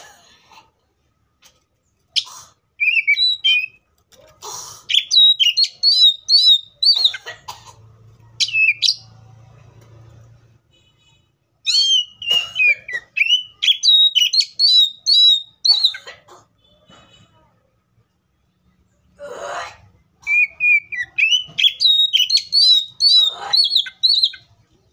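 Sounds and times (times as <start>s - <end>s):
bird singing whistled notes: 2.8s - 3.8s, 4.9s - 7.0s, 11.7s - 12.4s, 13.0s - 15.9s, 20.2s - 24.5s.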